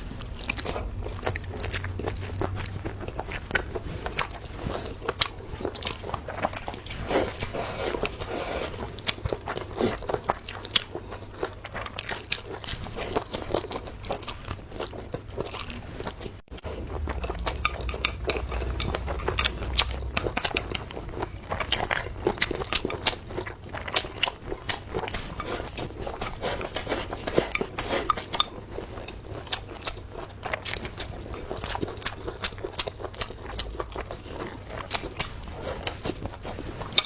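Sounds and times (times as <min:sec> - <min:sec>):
biting and chewing food: 0:00.0 - 0:37.0
utensils clicking against a dish: 0:17.4 - 0:21.1, 0:25.2 - 0:28.5.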